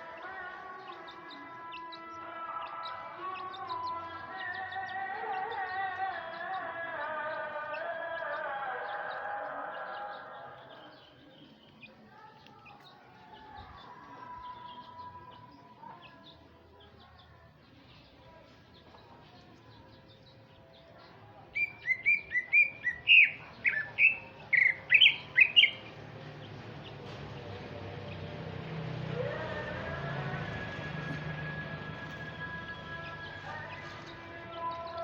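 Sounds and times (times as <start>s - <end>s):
bird twittering and chirping: 21.5s - 27.2s.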